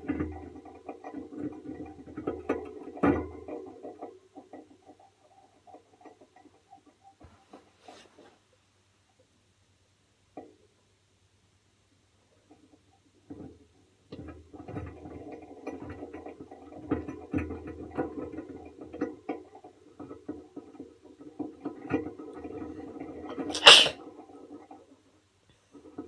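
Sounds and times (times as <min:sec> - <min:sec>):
small clicks and knocks: 0:00.0 - 0:07.8, 0:12.4 - 0:26.0
person sneezing: 0:23.5 - 0:23.9.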